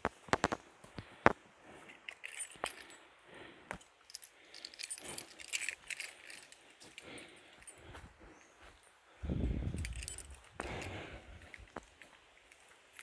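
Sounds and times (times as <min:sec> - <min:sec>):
keys jangling: 0:01.9 - 0:03.0, 0:03.7 - 0:07.9, 0:08.7 - 0:13.0.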